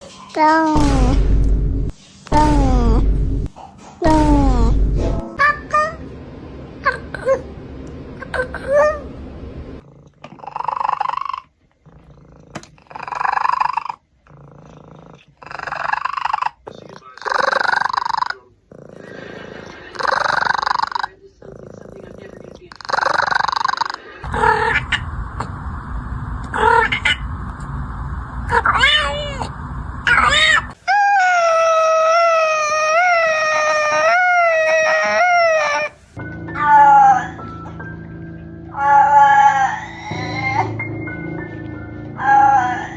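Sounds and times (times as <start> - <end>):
cat yowling: 22.8 - 25.1, 26.6 - 27.3, 28.5 - 36.0, 38.8 - 40.8
cat making rough pulsing call: 28.5 - 30.8
cat meowing: 30.1 - 35.9.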